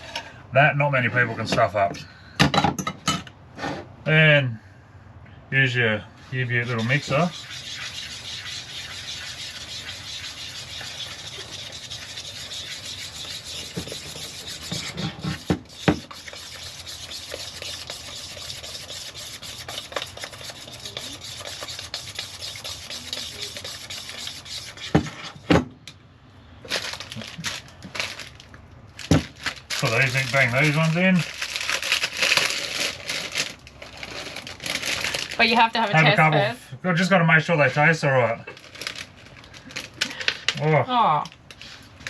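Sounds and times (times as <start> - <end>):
hand mixer scraping batter: 6.4 - 25.0.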